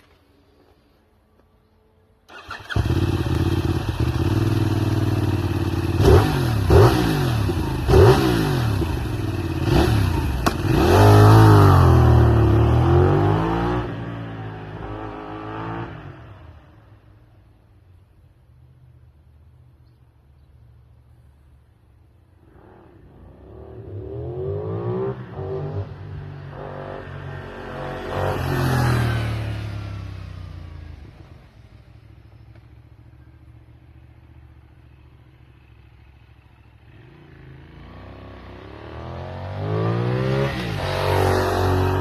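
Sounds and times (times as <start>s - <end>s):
motorcycle accelerating past: 2.3s - 16.6s, 22.4s - 31.6s, 34.8s - 42.0s.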